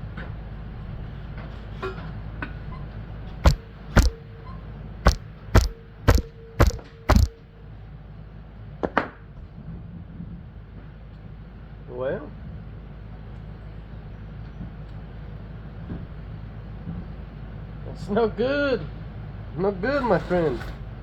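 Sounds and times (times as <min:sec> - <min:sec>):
hammer striking metal: 0:03.4 - 0:04.2, 0:05.1 - 0:07.3.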